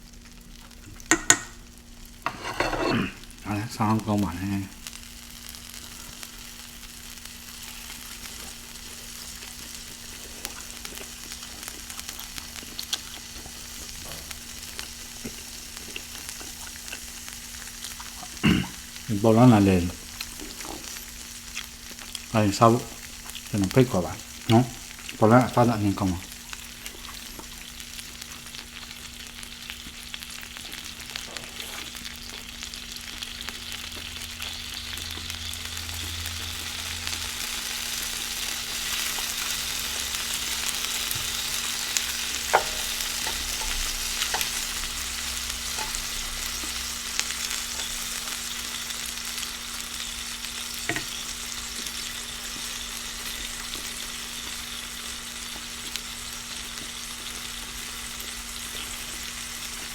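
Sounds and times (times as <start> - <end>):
food sizzling in hot oil: 0.0 - 59.9.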